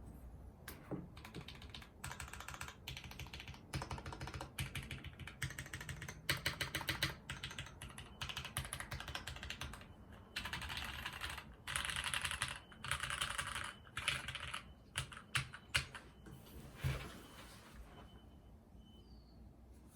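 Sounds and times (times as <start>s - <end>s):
mechanical keyboard typing: 0.7s - 16.0s.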